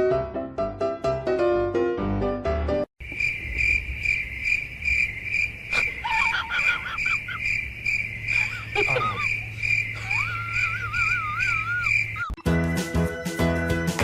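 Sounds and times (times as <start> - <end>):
piano music: 0.0 - 2.9
crickets chirping: 3.0 - 12.4.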